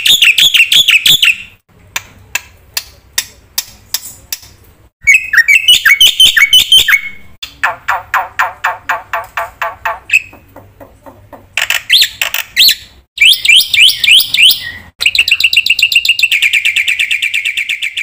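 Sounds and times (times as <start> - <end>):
bird singing: 5.0 - 8.8, 11.7 - 18.0.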